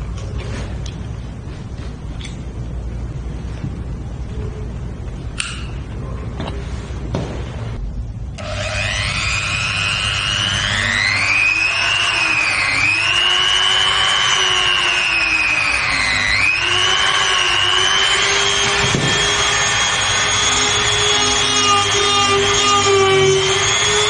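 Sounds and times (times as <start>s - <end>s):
grinder motor whining: 8.4s - 24.0s.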